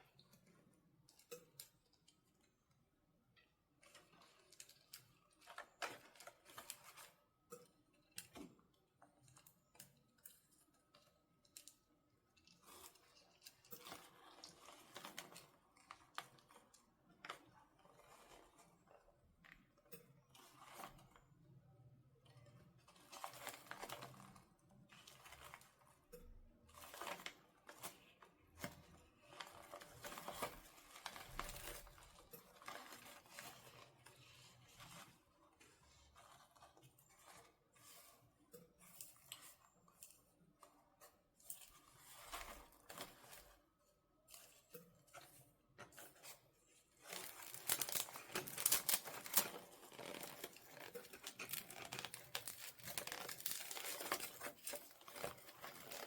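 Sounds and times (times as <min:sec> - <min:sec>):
packaging crinkling and tearing: 0:26.7 - 0:35.2, 0:46.3 - 0:56.0.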